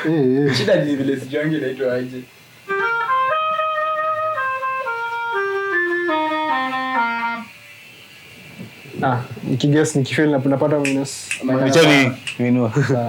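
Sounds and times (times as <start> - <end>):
clarinet melody: 2.7 - 7.6.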